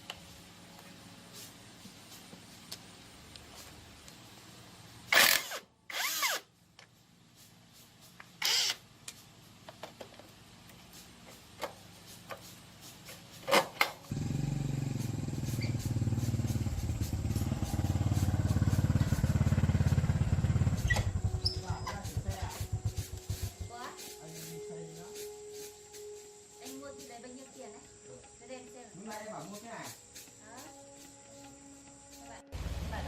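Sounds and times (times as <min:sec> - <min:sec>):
small engine running: 0:14.1 - 0:23.9.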